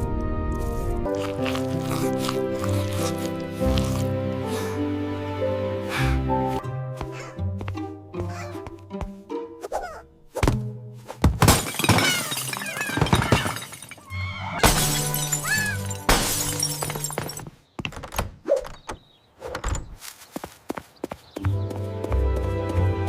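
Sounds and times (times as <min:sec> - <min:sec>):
something shattering: 0:11.4 - 0:17.5.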